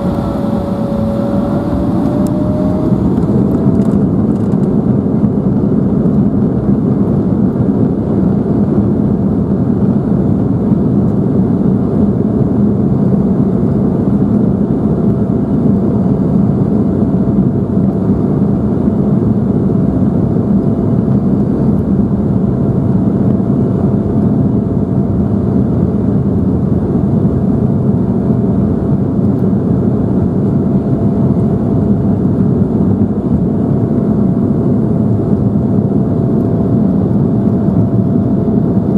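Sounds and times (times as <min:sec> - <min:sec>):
faint constant whine: 0:00.0 - 0:04.5
airplane cabin engine rush: 0:00.0 - 0:38.9.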